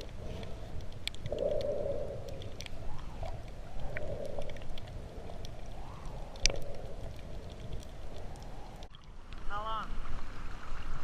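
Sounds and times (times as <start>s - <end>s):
muffled underwater water rush: 0.0s - 11.0s.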